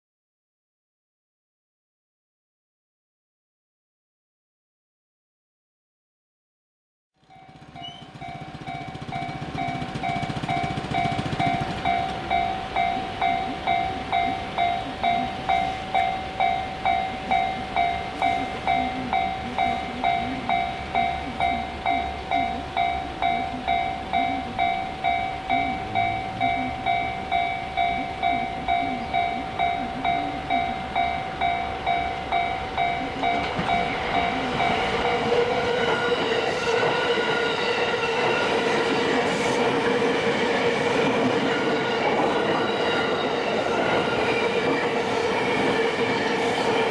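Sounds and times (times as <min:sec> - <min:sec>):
electric train passing: 0:07.2 - 0:46.9
train whine: 0:07.2 - 0:46.9
level crossing bell ringing: 0:07.3 - 0:35.7.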